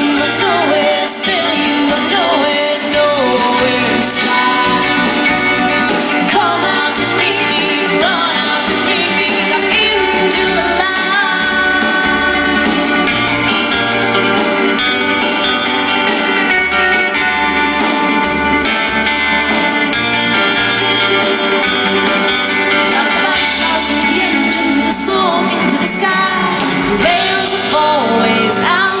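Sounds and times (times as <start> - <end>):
person singing: 0.0 - 5.4, 6.0 - 13.8, 22.5 - 29.0
guitars playing: 0.0 - 29.0.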